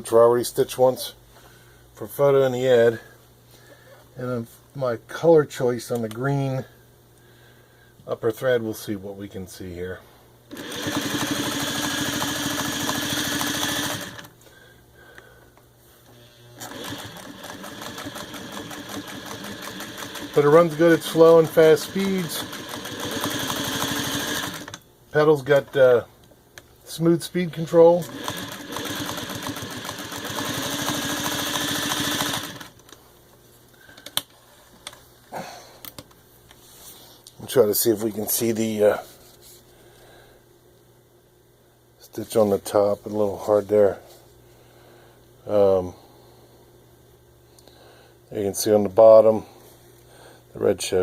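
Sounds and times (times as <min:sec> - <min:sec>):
sewing machine stitching: 0:10.5 - 0:14.3, 0:16.1 - 0:24.8, 0:28.0 - 0:32.8.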